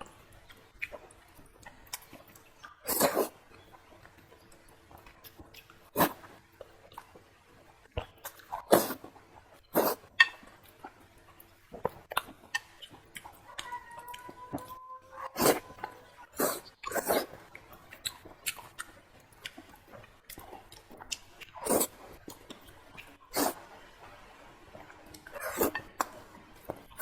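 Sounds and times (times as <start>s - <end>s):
wet chewing and lip smacks: 0.4s - 5.9s, 7.8s - 23.6s.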